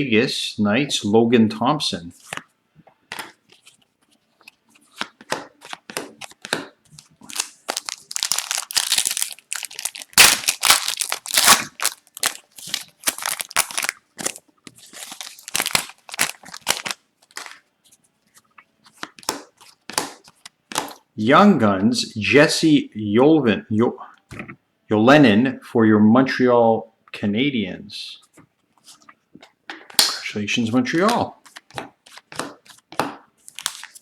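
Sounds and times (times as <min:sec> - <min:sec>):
card pack wrapper crinkling: 0:07.0 - 0:17.6, 0:33.4 - 0:34.0
cards sliding against each other: 0:33.4 - 0:34.0.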